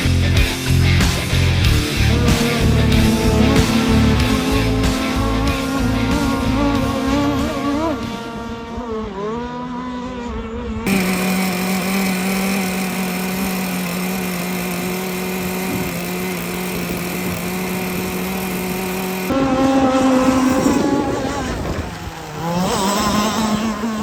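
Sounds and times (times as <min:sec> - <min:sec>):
small motor running: 0:00.0 - 0:09.9, 0:10.9 - 0:24.0
wavering gliding tones: 0:01.6 - 0:09.4.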